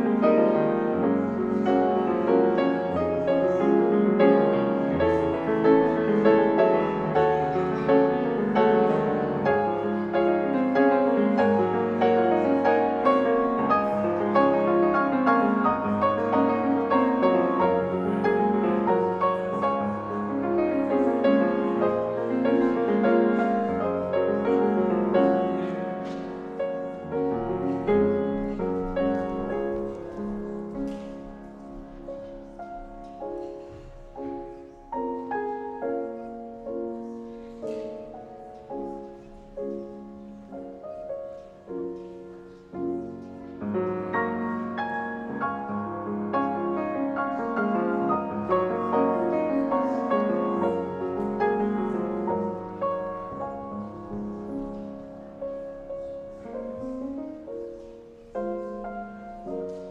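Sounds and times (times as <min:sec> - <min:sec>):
slow solo piano: 0:00.0 - 0:59.9.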